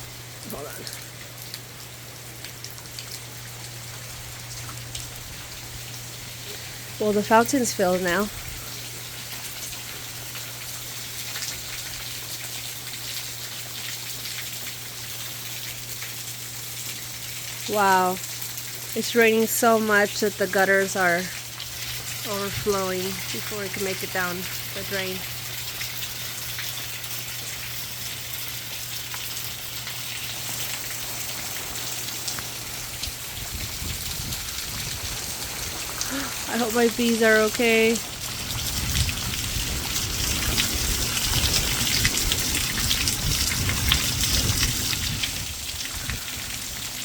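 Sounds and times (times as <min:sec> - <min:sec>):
heavy rain falling: 0:00.0 - 0:47.0
raindrops ticking: 0:00.2 - 0:47.0.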